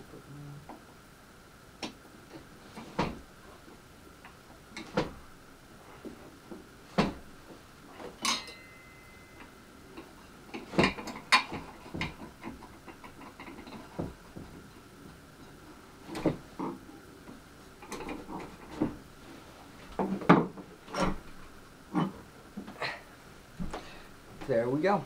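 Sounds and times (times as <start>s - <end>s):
brief metallic ring: 8.2s - 9.4s
hard parts knocking and clicking: 9.4s - 14.6s.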